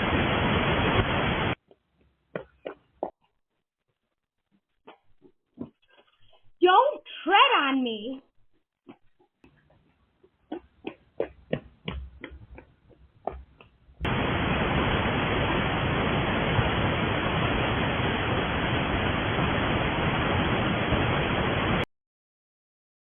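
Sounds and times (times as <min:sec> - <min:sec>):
loud steady hiss: 0:00.0 - 0:01.6, 0:14.0 - 0:21.8
short irregular taps: 0:08.5 - 0:13.9.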